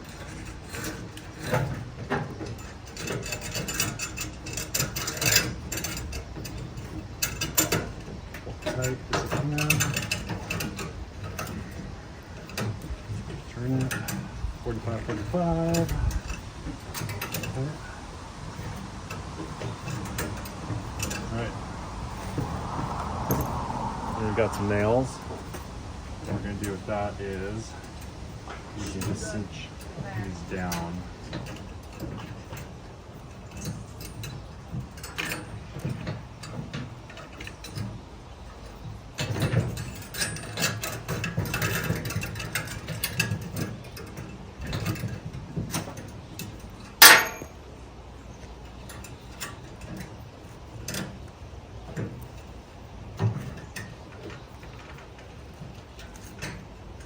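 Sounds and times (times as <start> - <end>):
wire twisting metal scraping: 0.0 - 47.8
sharp metallic ping: 47.0 - 47.6.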